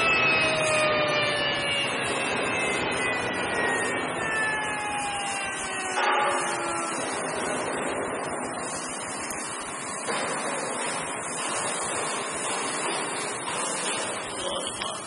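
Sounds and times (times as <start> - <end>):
grinder whining down: 0.0 - 7.8.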